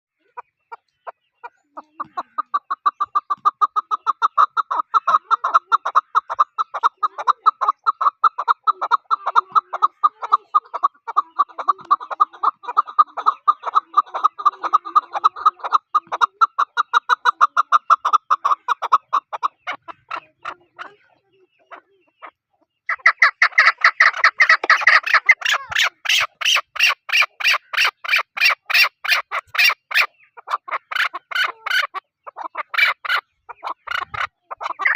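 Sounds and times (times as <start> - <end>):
bird calling in fast runs: 0.3 - 14.5, 22.2 - 34.9.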